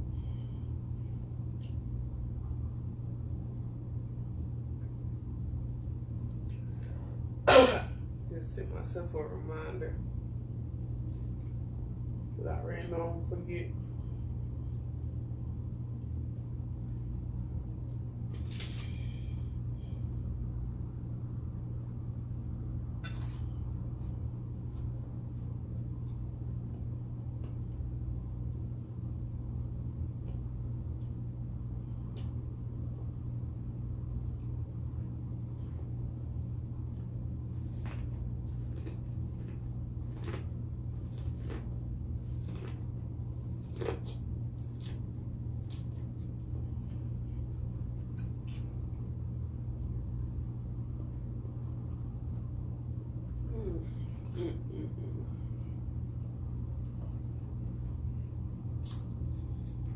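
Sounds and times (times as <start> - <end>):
steady low hum: 0.0 - 59.9
chewing: 36.9 - 46.3.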